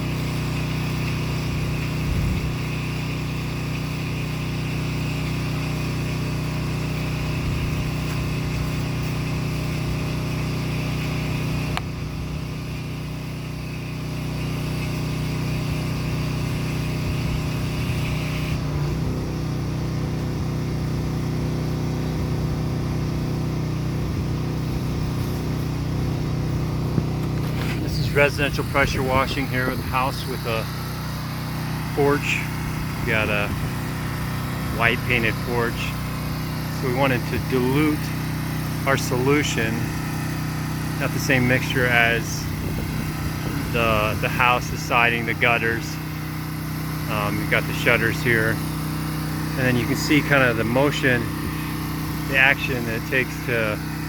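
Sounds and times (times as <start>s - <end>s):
pressure washer engine running: 0.0s - 54.0s
spray hissing: 2.6s - 11.8s, 24.6s - 54.0s.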